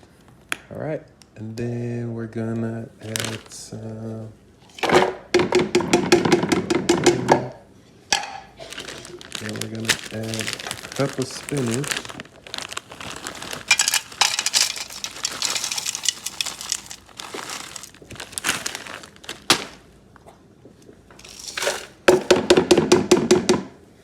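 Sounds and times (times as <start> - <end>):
spinach leaves rustling: 3.0 - 3.8, 8.6 - 19.9, 21.2 - 22.2.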